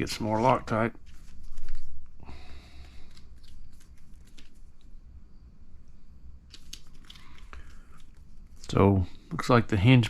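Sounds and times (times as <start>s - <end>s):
small parts clicking and rustling: 0.0s - 2.1s, 2.8s - 5.0s, 6.4s - 8.8s
faint low hum: 0.0s - 10.0s.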